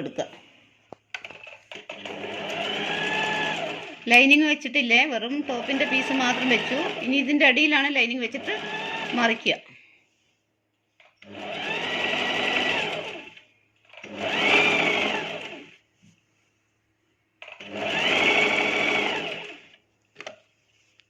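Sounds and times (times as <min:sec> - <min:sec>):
sewing machine stitching: 0:01.1 - 0:04.4, 0:05.2 - 0:07.6, 0:08.2 - 0:09.6, 0:11.0 - 0:15.8, 0:17.4 - 0:19.8.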